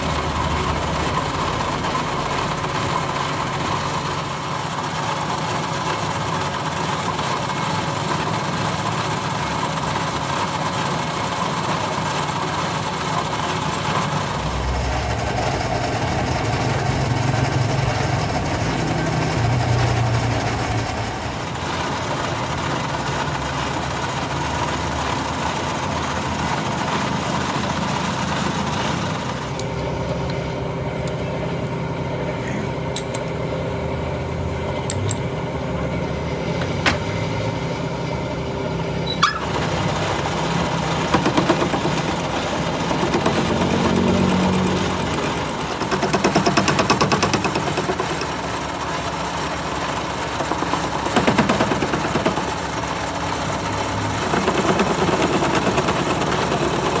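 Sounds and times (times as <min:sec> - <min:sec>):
workshop machine running: 0:00.0 - 0:57.0
sharp metallic clicks: 0:32.9 - 0:33.4, 0:34.8 - 0:35.2.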